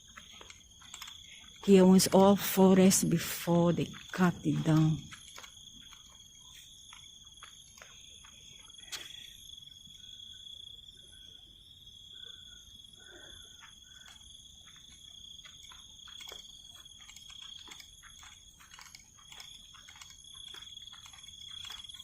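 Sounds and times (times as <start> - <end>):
crickets trilling: 0.0 - 22.0
sharp clicks and crackles: 0.2 - 1.7, 4.0 - 6.2, 14.8 - 22.0.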